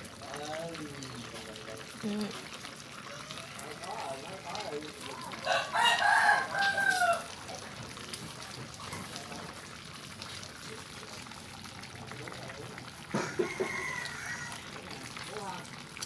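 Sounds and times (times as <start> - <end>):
rooster crowing: 5.3 - 7.4, 13.1 - 14.9.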